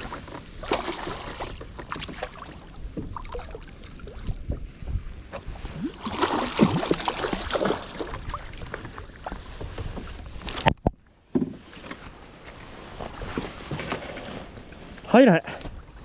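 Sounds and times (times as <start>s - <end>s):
wind on microphone: 0.0s - 11.0s
water splashing around kayak: 0.0s - 16.0s.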